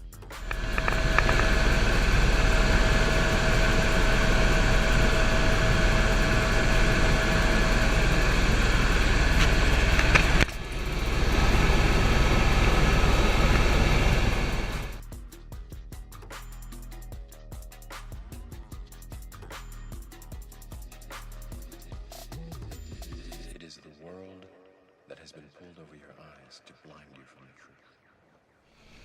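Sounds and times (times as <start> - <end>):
engine drone: 0.4 - 15.0
steady high tone: 0.4 - 15.0.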